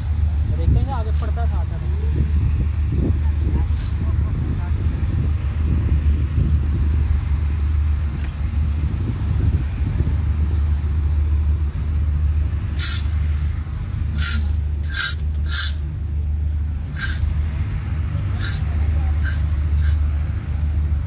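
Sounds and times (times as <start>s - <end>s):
low rumble: 0.0s - 21.0s
hissing bursts: 12.7s - 13.1s, 14.2s - 15.8s, 16.9s - 17.3s, 18.4s - 20.0s.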